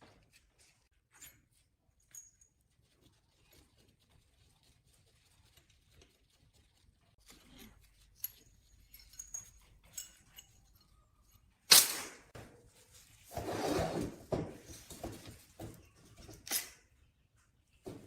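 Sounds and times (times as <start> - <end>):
rustling or scraping: 12.5 - 16.5.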